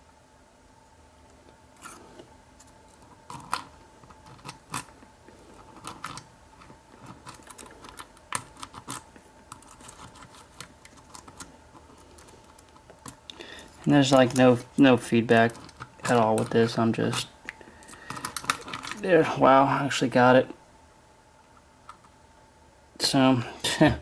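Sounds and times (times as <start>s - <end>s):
lock pick clicking and scraping: 15.5s - 19.0s.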